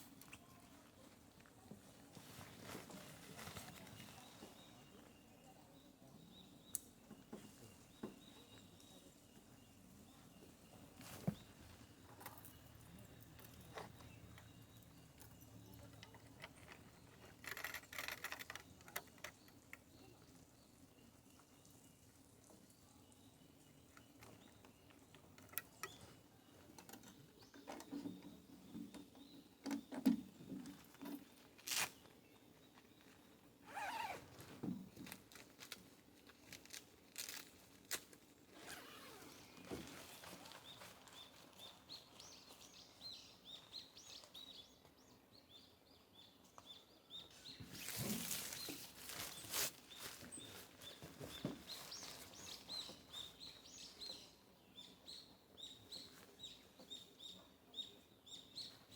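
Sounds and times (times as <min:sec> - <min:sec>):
small birds chirping: 0:00.0 - 0:58.9
rustling: 0:01.9 - 0:04.6, 0:30.8 - 0:32.1, 0:33.1 - 0:42.6, 0:47.6 - 0:53.0.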